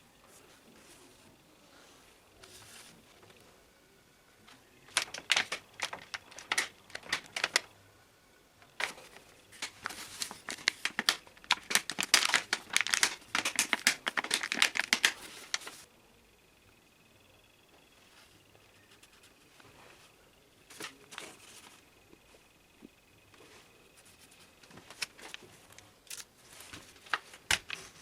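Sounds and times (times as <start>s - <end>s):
plastic packaging crinkling: 4.9s - 7.7s, 8.6s - 15.9s
plastic toys clicking and rattling: 4.9s - 7.7s, 8.6s - 15.8s.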